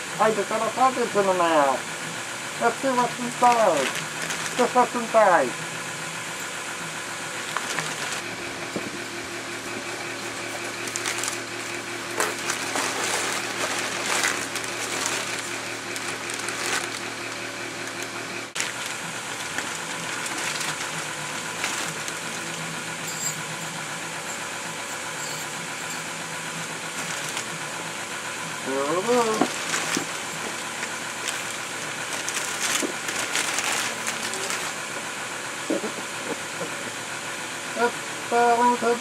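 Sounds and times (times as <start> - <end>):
mechanical hum: 0.0 - 39.0
wrapping crinkling: 3.2 - 4.8, 7.4 - 8.3, 10.3 - 22.9, 26.8 - 27.6, 29.2 - 34.9.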